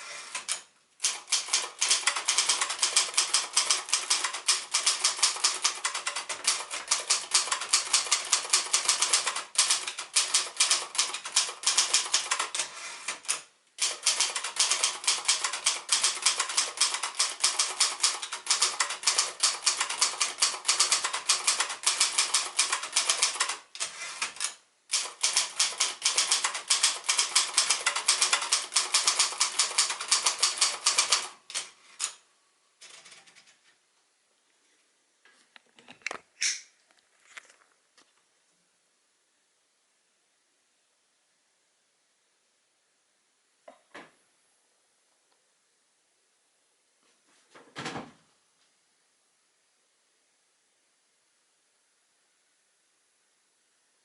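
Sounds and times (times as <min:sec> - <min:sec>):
manual typewriter typing: 0:00.1 - 0:32.2, 0:32.8 - 0:33.6.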